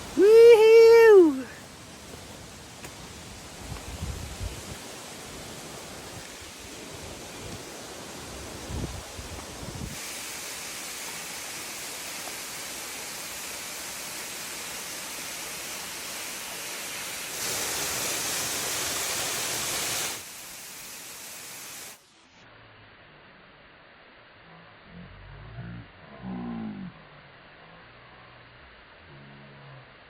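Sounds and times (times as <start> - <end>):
waterfall rushing: 0.0 - 3.6, 4.3 - 22.0.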